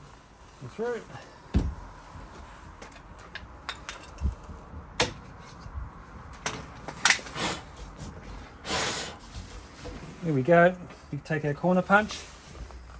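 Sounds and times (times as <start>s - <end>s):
low thud: 1.5s - 1.9s.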